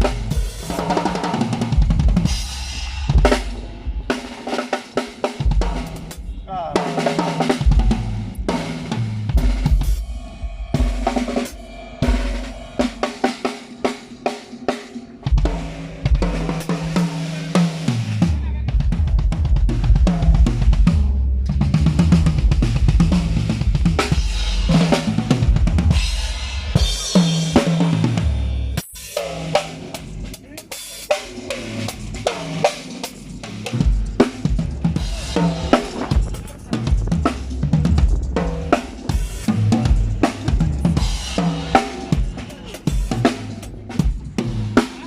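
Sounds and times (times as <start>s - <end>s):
bass notes: 0.0s - 4.2s, 15.3s - 30.3s, 33.3s - 44.9s
drum kit groove: 0.0s - 45.0s.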